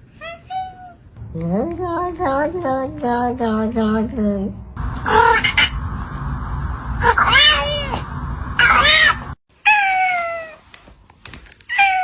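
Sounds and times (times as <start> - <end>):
cat meowing: 11.7 - 12.0.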